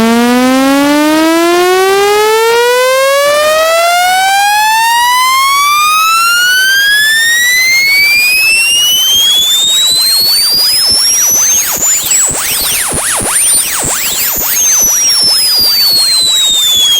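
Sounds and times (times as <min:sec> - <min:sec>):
electronic tone sweeping upward: 0:00.0 - 0:16.9.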